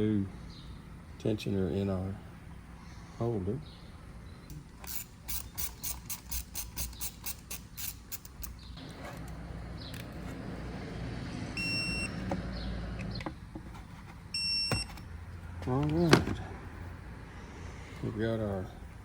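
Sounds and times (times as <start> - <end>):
ratchet wrench clicking: 4.5 - 8.7
short electronic beeps: 11.6 - 12.2, 14.4 - 15.0.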